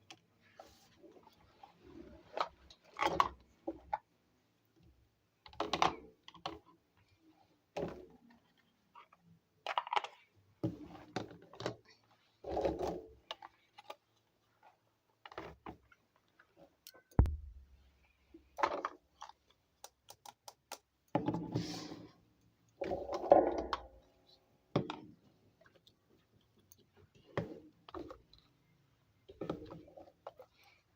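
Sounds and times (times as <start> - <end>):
sharp thud: 17.2 - 17.8.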